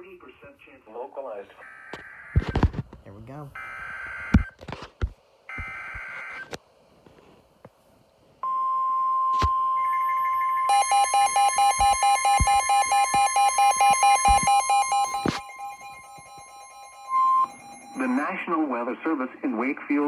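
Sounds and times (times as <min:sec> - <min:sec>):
pulsing alarm: 0:09.4 - 0:18.2
steady high alert tone: 0:09.8 - 0:18.4.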